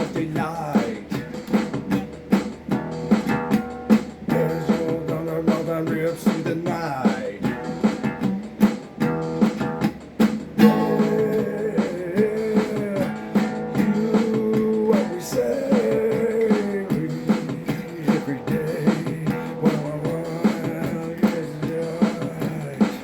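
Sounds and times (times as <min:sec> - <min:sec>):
guitar: 0:00.0 - 0:23.0
steady beat: 0:00.0 - 0:23.0.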